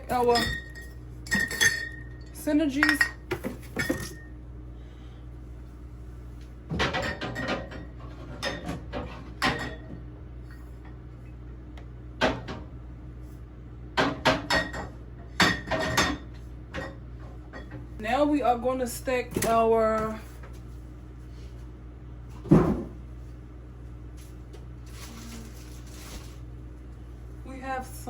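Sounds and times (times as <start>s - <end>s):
glass bottles clinking: 0.0s - 4.3s.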